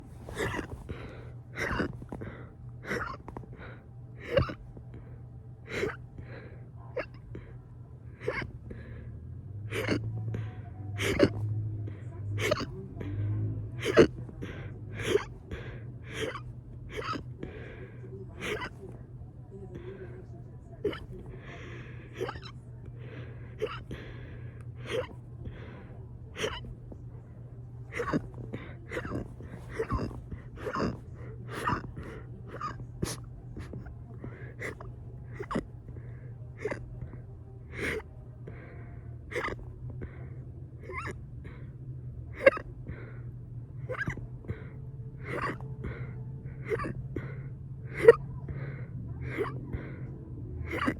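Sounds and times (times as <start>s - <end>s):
soft breaths: 0.0s - 50.9s
person hiccuping: 0.2s - 3.4s, 4.2s - 4.6s, 5.7s - 6.0s, 6.9s - 7.2s, 8.2s - 8.5s, 9.7s - 10.2s, 11.0s - 11.5s, 12.4s - 12.8s, 13.8s - 14.3s, 14.9s - 15.4s, 16.1s - 17.3s, 18.4s - 18.8s, 20.8s - 21.2s, 22.2s - 22.5s, 23.6s - 23.9s, 24.8s - 25.2s, 26.4s - 26.8s, 27.9s - 35.7s, 36.6s - 36.9s, 37.8s - 38.0s, 39.3s - 39.6s, 40.8s - 41.2s, 42.4s - 42.7s, 43.9s - 46.0s, 46.6s - 47.3s, 47.9s - 48.3s, 49.2s - 49.9s, 50.7s - 50.9s.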